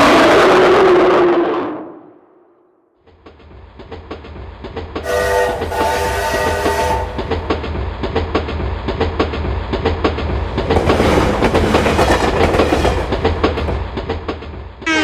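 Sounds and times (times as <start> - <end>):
train wheels clicking on rails: 3.0 - 14.9
train rumble: 3.0 - 15.0.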